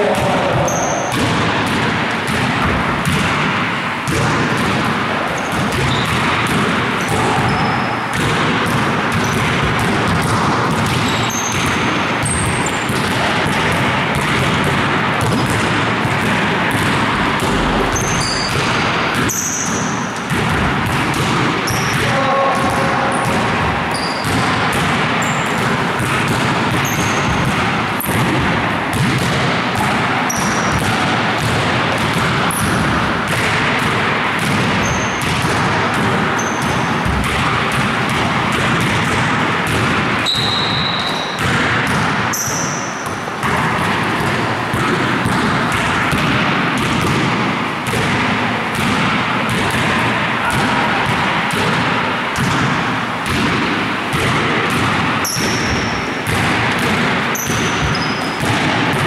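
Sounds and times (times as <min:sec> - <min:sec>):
basketballs bouncing on gym floor: 0:00.0 - 0:59.0
shoe squeaks: 0:00.6 - 0:01.2, 0:05.3 - 0:06.2, 0:07.0 - 0:08.1, 0:11.0 - 0:12.9, 0:17.5 - 0:20.2, 0:21.7 - 0:22.0, 0:23.9 - 0:24.5, 0:25.2 - 0:25.6, 0:26.8 - 0:27.4, 0:30.3 - 0:30.7, 0:34.8 - 0:35.2, 0:36.4 - 0:36.8, 0:40.2 - 0:41.4, 0:42.3 - 0:43.0, 0:57.3 - 0:58.4
steady din: 0:15.6 - 0:20.9.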